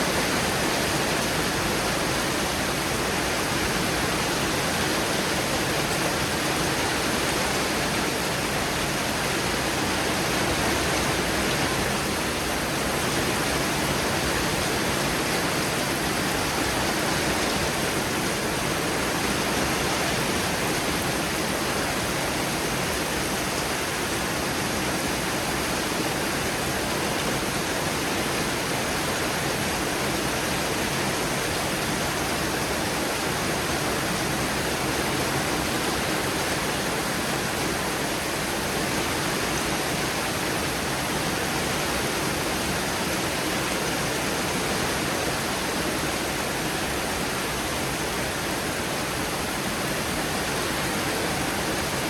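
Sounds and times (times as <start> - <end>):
heavy rain pouring: 0.0 - 52.0.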